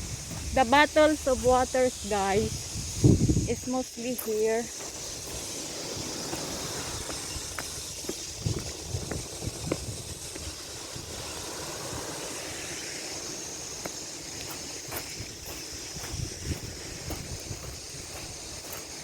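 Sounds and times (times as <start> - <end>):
sea surf hissing: 0.0 - 19.0
wind: 0.0 - 19.0.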